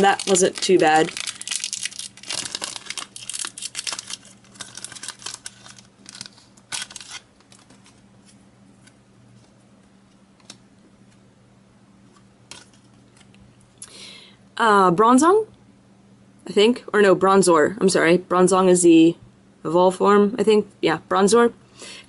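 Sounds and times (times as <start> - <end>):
foil wrapper crinkling: 0.0 - 9.0, 12.5 - 13.4
low steady hum: 0.0 - 22.0.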